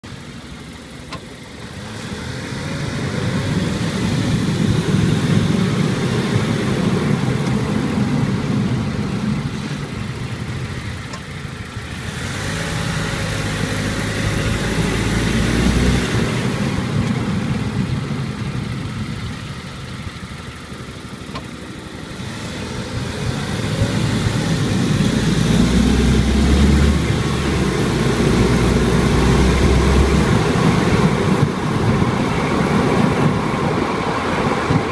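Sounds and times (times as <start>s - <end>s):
car engine: 0.0s - 34.9s
road noise: 0.0s - 34.9s.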